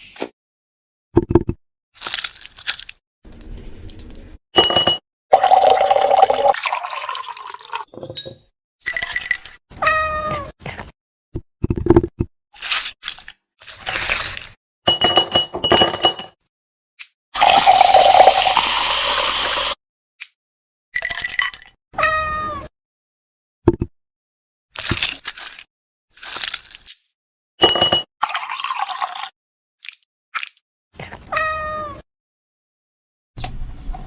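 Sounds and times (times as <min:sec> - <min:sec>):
cat meowing: 0:09.8 - 0:10.5, 0:22.0 - 0:22.7, 0:31.3 - 0:32.0.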